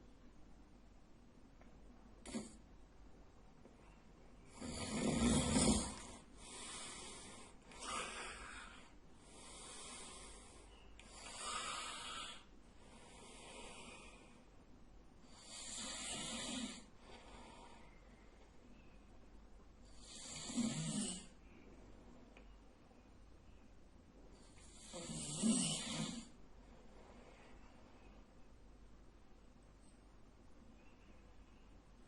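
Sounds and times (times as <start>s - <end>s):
man snoring: 4.5s - 10.4s, 11.1s - 14.2s, 15.3s - 16.9s, 20.0s - 21.3s, 24.6s - 26.4s.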